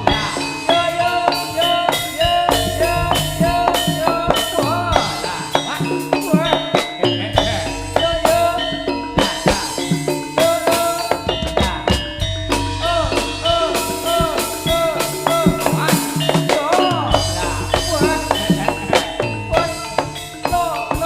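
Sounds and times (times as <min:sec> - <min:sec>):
drums and pitched percussion: 0:00.0 - 0:21.0
sustained low tones: 0:02.2 - 0:05.8.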